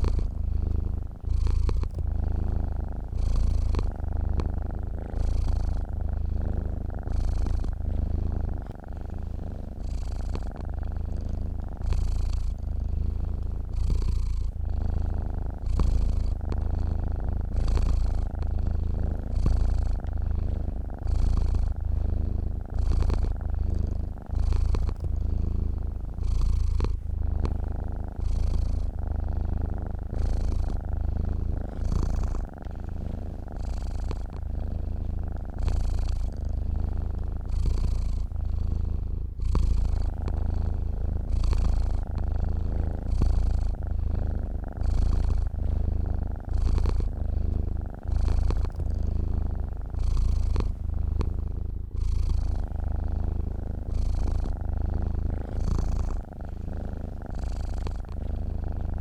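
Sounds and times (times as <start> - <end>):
cat purring: 0.0 - 59.0.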